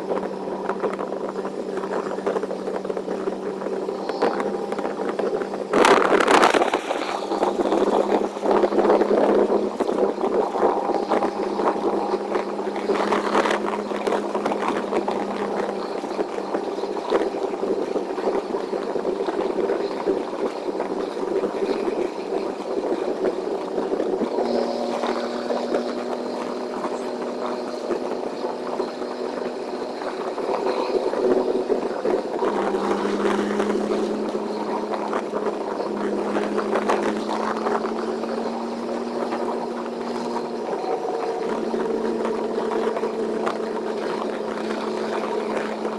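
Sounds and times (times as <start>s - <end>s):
truck engine and road drone: 0.0s - 45.9s.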